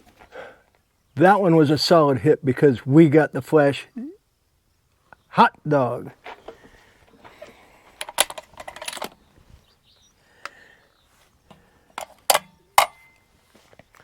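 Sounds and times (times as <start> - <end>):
hands handling rifle and gear clicks: 6.3 - 9.2, 11.5 - 14.0.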